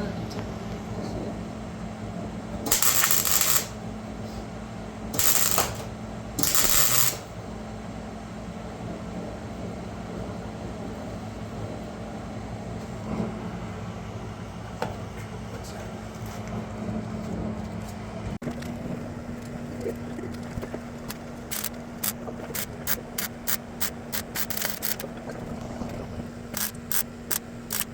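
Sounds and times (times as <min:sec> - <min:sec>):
low machine hum: 0:00.0 - 0:27.9
short bursts of hiss: 0:02.7 - 0:03.8, 0:05.2 - 0:07.3.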